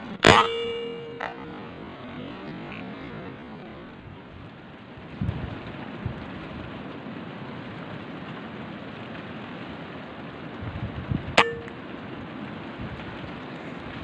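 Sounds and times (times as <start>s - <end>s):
sharp loud crack: 0.0s - 4.7s
steady rain hiss: 1.6s - 14.0s.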